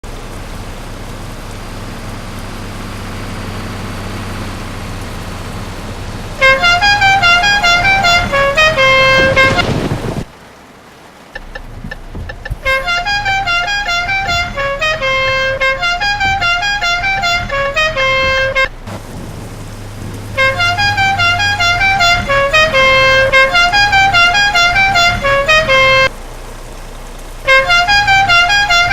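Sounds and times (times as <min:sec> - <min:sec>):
musical horn playing a tune: 0:06.4 - 0:10.0, 0:12.6 - 0:18.9, 0:20.4 - 0:26.1, 0:27.5 - 0:28.9.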